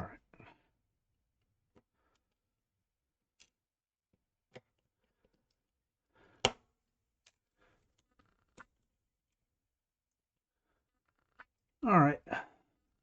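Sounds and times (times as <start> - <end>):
small clicks and taps from handling: 3.3 - 3.6.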